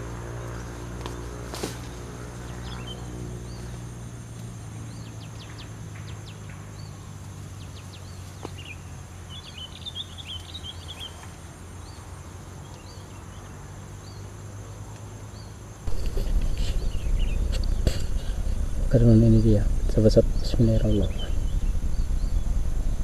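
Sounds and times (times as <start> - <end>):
small birds chirping: 0.0 - 23.0
low wind rumble: 15.8 - 23.0.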